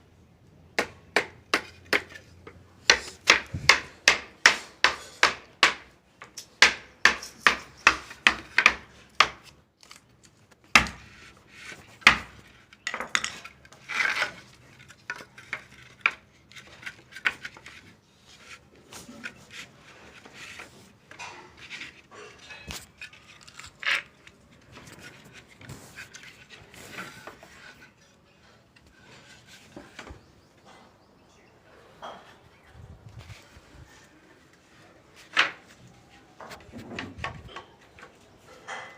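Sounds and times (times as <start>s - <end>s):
sharp strikes on wood: 0.8s - 2.2s, 2.8s - 5.9s, 6.6s - 9.5s, 10.7s - 11.1s, 12.0s - 12.4s
wood and tools clattering: 0.8s - 31.1s, 31.8s - 38.9s.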